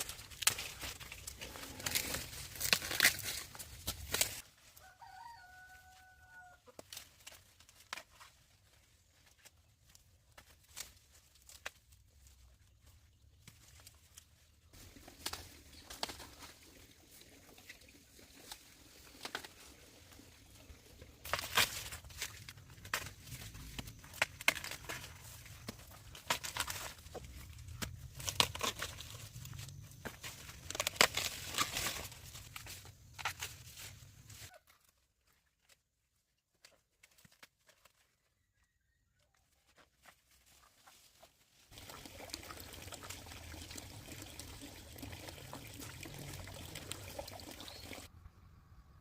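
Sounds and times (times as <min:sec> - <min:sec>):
snapping and tearing: 0:00.0 - 0:04.4, 0:21.2 - 0:33.6
dry corn husks rustling: 0:00.0 - 0:48.1
rooster crowing: 0:04.8 - 0:06.7.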